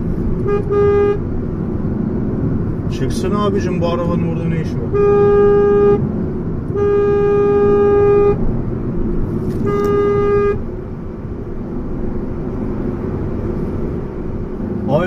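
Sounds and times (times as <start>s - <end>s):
road noise from moving car: 0.0s - 15.0s
car horn honking: 0.4s - 1.3s, 4.6s - 6.1s, 6.7s - 8.5s, 9.4s - 10.7s.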